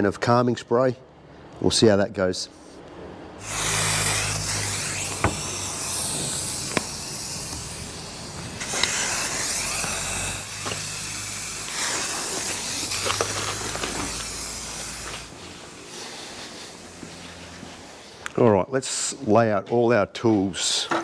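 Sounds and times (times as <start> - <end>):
aerosol spray can hissing: 3.4 - 18.2.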